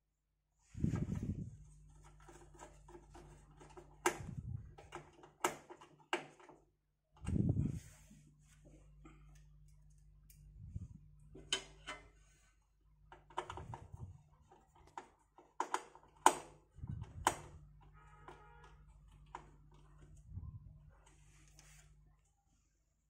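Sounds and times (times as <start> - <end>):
faint low hum: 7.2 - 15.5, 16.6 - 23.0.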